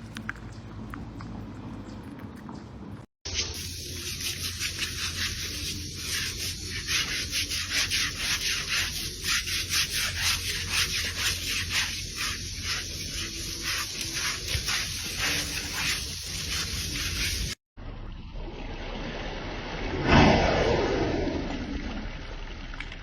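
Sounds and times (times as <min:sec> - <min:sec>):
scratchy rubbing strokes: 0:03.4 - 0:17.6.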